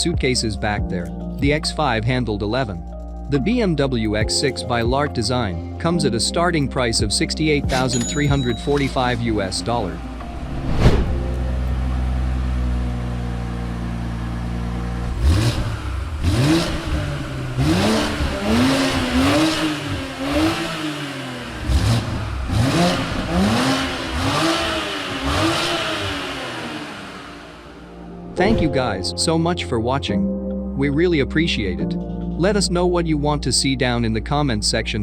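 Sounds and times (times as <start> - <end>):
car engine idling and revving: 8.8 - 28.4.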